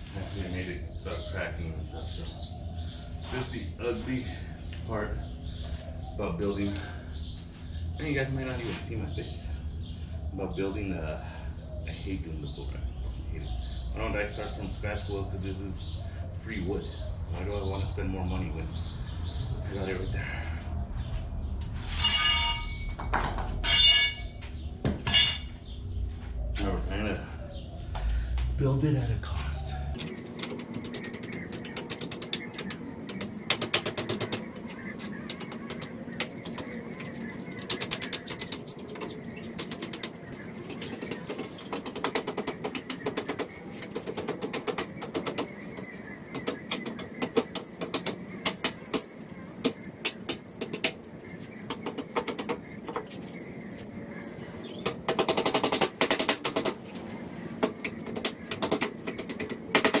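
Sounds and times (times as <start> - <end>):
hammering on wood: 30.0 - 53.3, 54.8 - 60.0.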